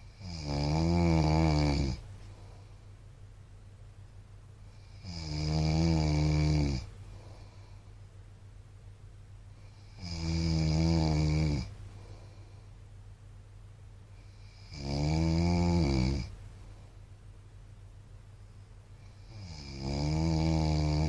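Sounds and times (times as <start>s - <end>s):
man snoring: 0.1s - 2.1s, 4.8s - 6.9s, 9.8s - 11.8s, 14.4s - 16.4s, 19.2s - 21.0s.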